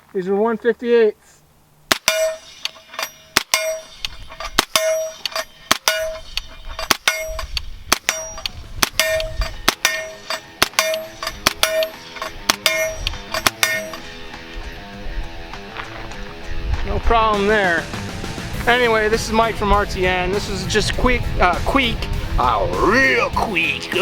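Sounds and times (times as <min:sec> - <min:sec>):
suppressed gunshots: 0:01.9 - 0:02.7
steel target ringing clang: 0:01.9 - 0:14.2.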